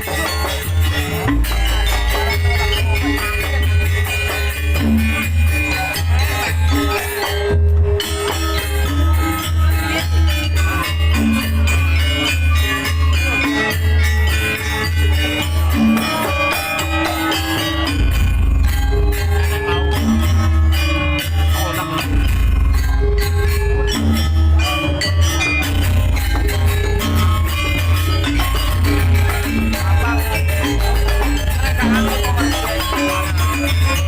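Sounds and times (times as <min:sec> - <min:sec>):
jingling rattling percussion: 0:00.0 - 0:34.0
melodic pitched tones: 0:00.0 - 0:34.0
heavy bass beat: 0:17.9 - 0:34.0.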